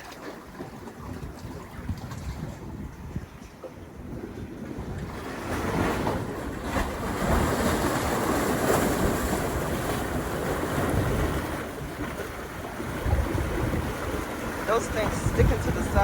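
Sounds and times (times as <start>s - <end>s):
wind buffeting microphone: 0.0s - 16.0s
sea waves washing on rocks: 4.0s - 16.0s.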